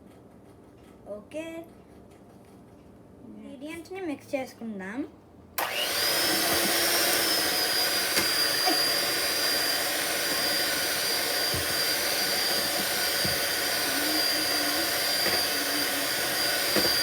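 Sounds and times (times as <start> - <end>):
electric mixer whining: 5.6 - 17.0.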